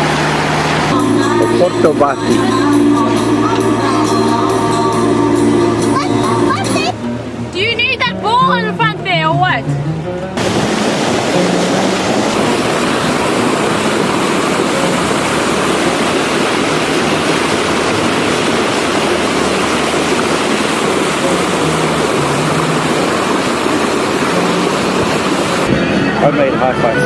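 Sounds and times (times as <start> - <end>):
water rushing past yacht: 0.0 - 27.0
wind rushing: 10.4 - 26.6.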